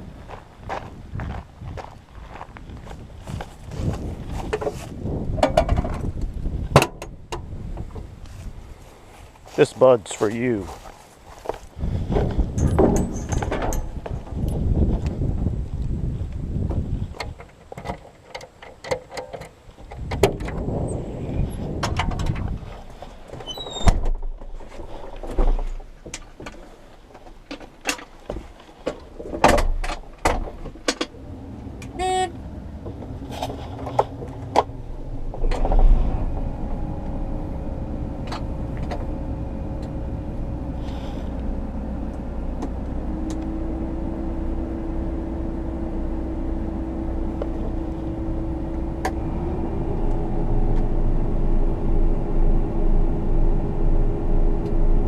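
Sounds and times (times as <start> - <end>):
engine running: 2.1 - 17.4, 30.6 - 55.0
knocks and clatter: 5.4 - 8.0, 12.1 - 14.6
short beeps: 32.0 - 32.4.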